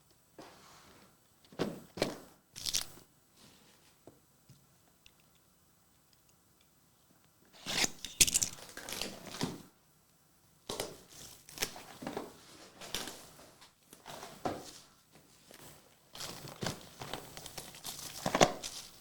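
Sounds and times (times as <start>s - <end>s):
packaging tearing and crinkling: 2.6s - 2.9s, 7.7s - 9.2s, 16.2s - 19.0s.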